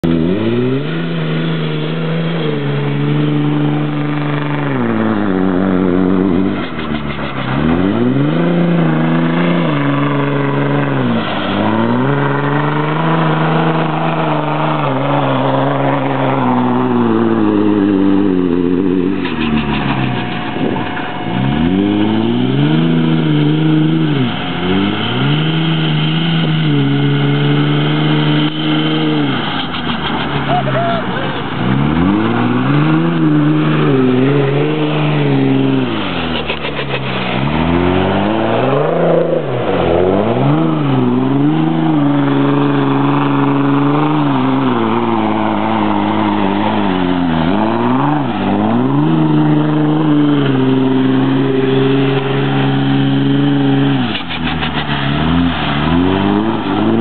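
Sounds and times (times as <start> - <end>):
diesel engine revving hard: 0.0 - 57.0.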